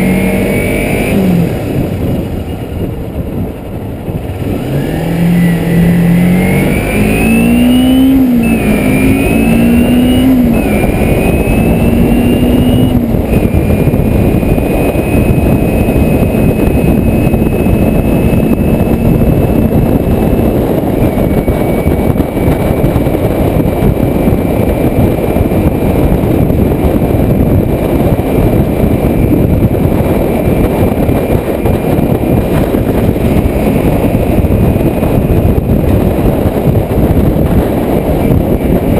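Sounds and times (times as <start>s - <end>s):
motorcycle engine revving through gears: 0.0s - 38.9s
wind rush on the microphone: 0.0s - 38.9s.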